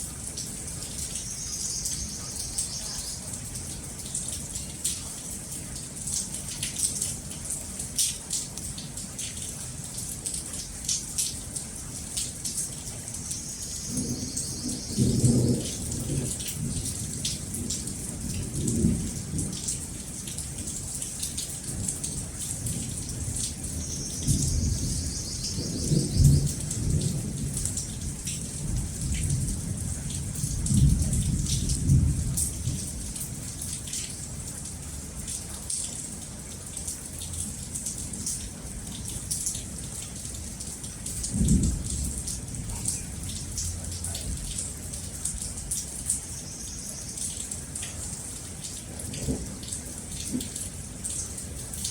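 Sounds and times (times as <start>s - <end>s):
rain hissing: 10.4s - 51.9s.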